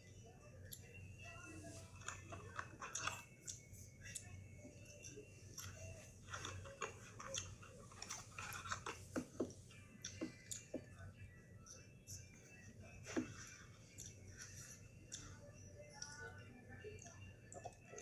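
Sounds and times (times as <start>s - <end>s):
person chewing crunchy food: 5.6s - 10.7s.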